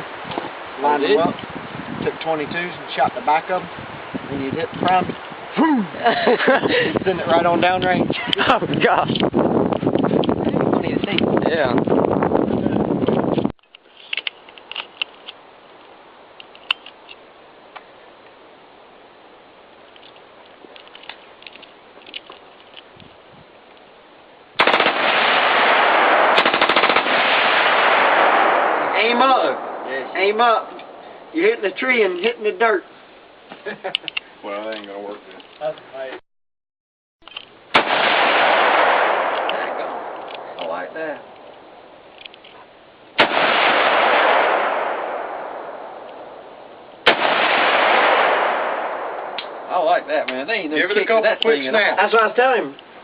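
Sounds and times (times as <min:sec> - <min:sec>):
rifle rapid fire: 0:24.6 - 0:29.9, 0:37.7 - 0:40.2, 0:43.2 - 0:46.0, 0:47.0 - 0:49.7
rolling gunshot echo: 0:24.6 - 0:30.0, 0:37.7 - 0:40.6, 0:43.2 - 0:46.4, 0:47.0 - 0:49.8.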